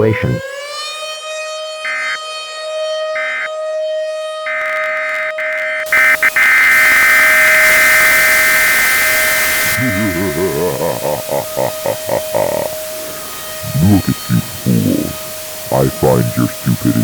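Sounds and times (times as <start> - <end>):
civil defense siren: 0.3 - 11.0
piercing high tone: 5.4 - 17.0
loud harsh hiss: 5.9 - 17.0.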